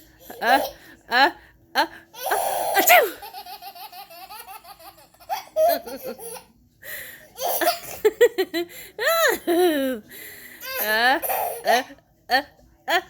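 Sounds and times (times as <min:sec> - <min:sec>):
baby laughing: 0:02.2 - 0:06.6, 0:07.4 - 0:08.3, 0:10.6 - 0:11.9.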